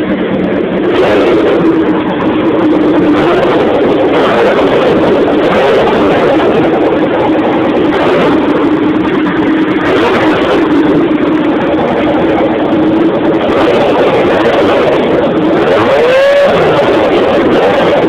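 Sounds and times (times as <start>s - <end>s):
motorcycle engine idling: 0.0s - 18.0s.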